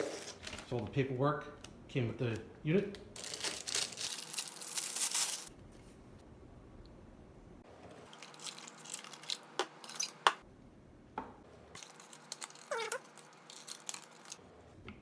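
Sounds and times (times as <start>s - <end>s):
packaging rustling: 3.2s - 5.5s, 8.0s - 10.2s, 11.8s - 14.4s.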